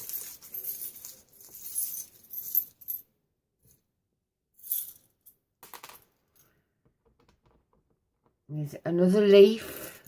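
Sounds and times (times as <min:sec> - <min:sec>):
metal charms jingling: 0:00.0 - 0:03.0.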